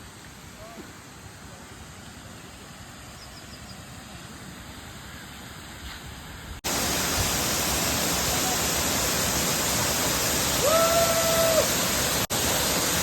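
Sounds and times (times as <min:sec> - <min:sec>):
waterfall rushing: 0:06.6 - 0:13.0.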